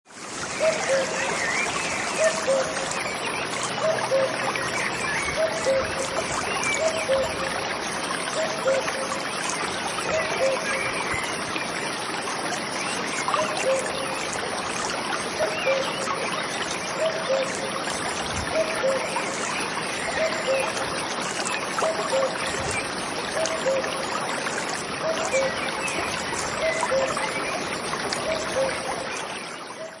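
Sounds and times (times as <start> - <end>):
stream flowing: 0.1 - 30.0
cuckoo calling: 8.4 - 9.1, 10.1 - 10.9, 17.0 - 17.6, 21.8 - 22.4, 23.4 - 24.0, 28.2 - 28.9.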